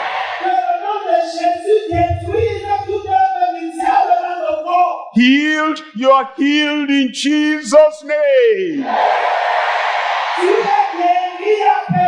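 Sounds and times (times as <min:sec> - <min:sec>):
slow worship music: 0:00.4 - 0:08.7
low bass note: 0:01.9 - 0:03.2.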